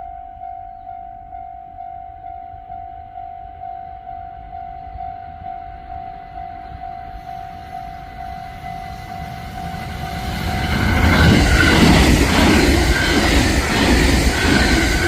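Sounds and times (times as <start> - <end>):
level crossing warning bell: 0.0 - 12.0
train running noise: 0.0 - 15.0.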